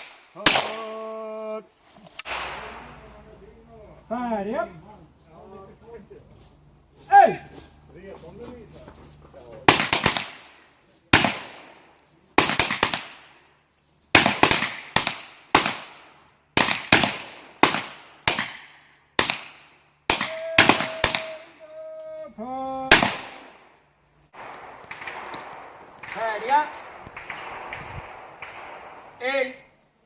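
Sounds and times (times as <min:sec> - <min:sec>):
revolver shots echoing: 0:02.2 - 0:03.1, 0:24.4 - 0:29.2.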